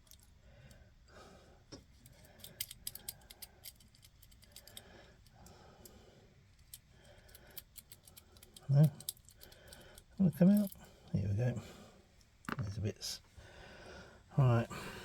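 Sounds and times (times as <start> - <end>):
lock cylinder metallic clicks: 2.4 - 4.9.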